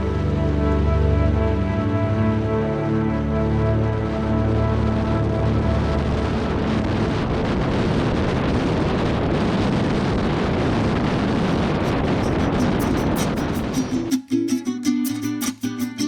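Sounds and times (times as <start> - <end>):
loud rushing noise: 4.0 - 14.2.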